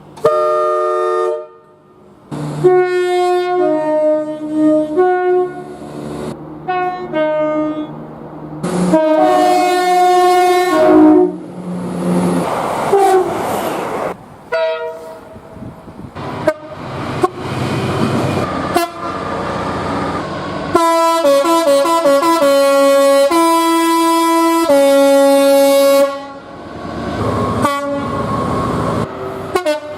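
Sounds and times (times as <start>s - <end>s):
running train noise: 0.0s - 29.9s
train horn blasts: 0.2s - 5.9s, 6.6s - 8.0s, 8.6s - 11.4s, 12.9s - 13.4s, 14.5s - 15.5s, 16.4s - 17.4s, 18.6s - 19.3s, 20.7s - 26.5s, 27.5s - 28.4s, 29.4s - 29.9s.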